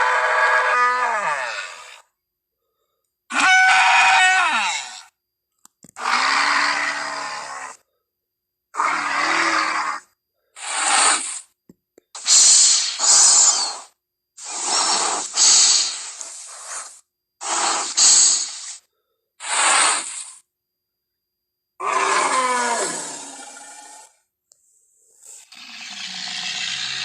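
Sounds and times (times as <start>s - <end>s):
creature hisses and snorts: 10.6s - 11.6s, 12.2s - 20.4s, 25.2s - 27.0s.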